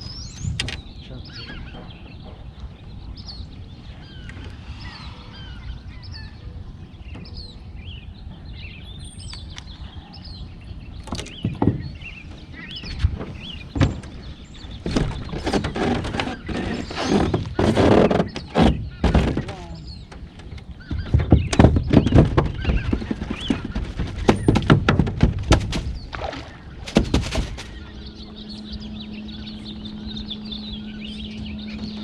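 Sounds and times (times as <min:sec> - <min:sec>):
knocks and bumps: 0:00.0 - 0:03.2, 0:11.0 - 0:28.0
low wind rumble: 0:00.0 - 0:32.0
small birds chirping: 0:00.0 - 0:32.0.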